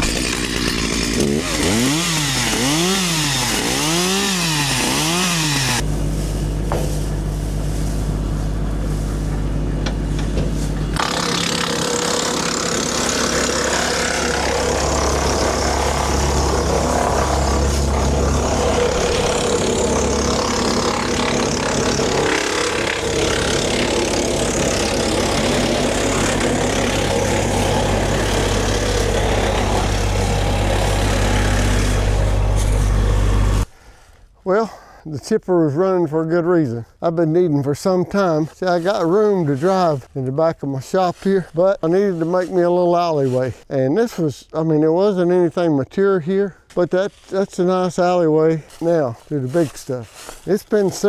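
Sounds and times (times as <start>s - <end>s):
chainsaw revving: 0.0s - 5.9s, 9.4s - 33.7s
wood chipper engine running: 0.0s - 33.7s.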